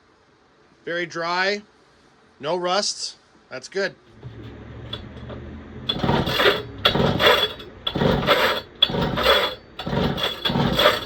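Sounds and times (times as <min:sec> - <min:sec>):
chainsaw recoil starter pulls: 0:05.9 - 0:11.0.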